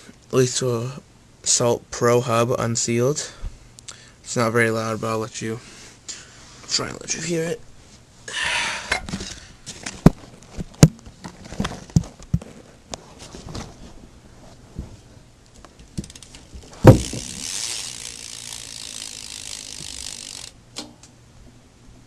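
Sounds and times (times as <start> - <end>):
bike handling knocks and clicks: 15.7 - 18.0, 19.4 - 21.1
bike freewheel ticking: 15.8 - 20.9
loud thump: 16.8 - 17.4.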